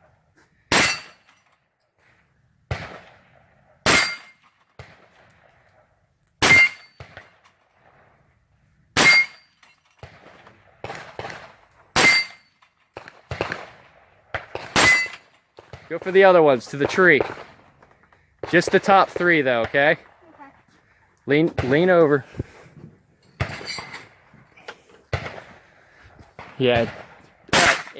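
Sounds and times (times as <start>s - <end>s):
rifle shots: 0.7s - 1.2s, 2.7s - 5.3s, 6.4s - 7.4s, 9.0s - 9.4s, 10.0s - 17.8s, 18.4s - 20.1s, 25.1s - 25.6s, 26.4s - 27.9s.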